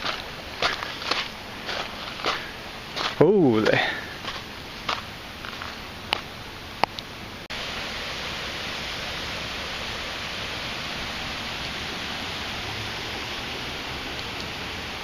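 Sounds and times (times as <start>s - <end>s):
creek water rushing: 0.0s - 15.0s.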